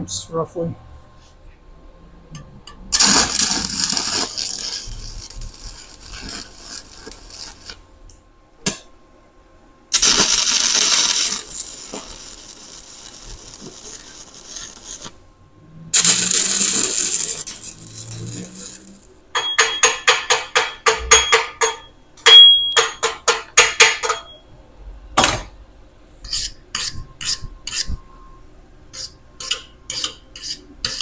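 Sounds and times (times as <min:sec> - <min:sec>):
welding arc crackling: 0:02.9 - 0:07.9, 0:09.9 - 0:15.2, 0:16.0 - 0:19.2.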